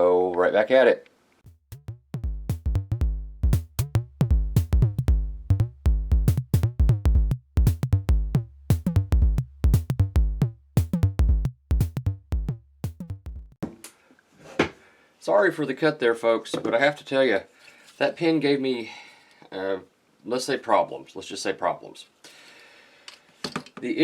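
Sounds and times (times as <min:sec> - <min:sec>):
drum machine beat: 0:01.4 - 0:13.6
deep bass: 0:01.5 - 0:13.6.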